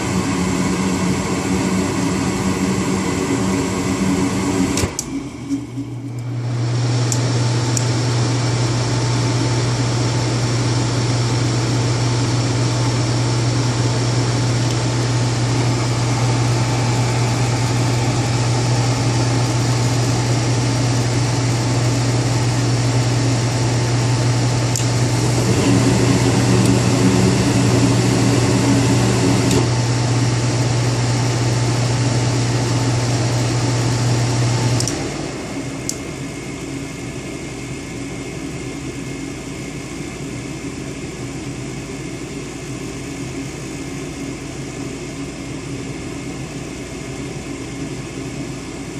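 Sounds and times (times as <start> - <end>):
blower air rushing: 0.0 - 40.2
furnace low hum: 0.0 - 48.9
higher hum: 14.3 - 22.1.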